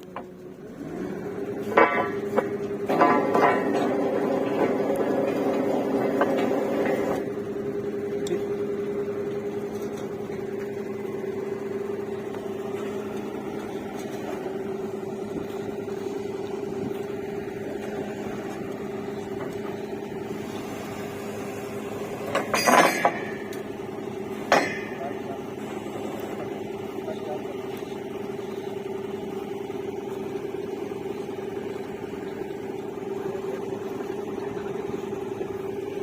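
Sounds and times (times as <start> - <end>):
drilling rig droning: 0.0 - 36.0
loud metallic clanks: 1.6 - 7.3, 22.0 - 25.4.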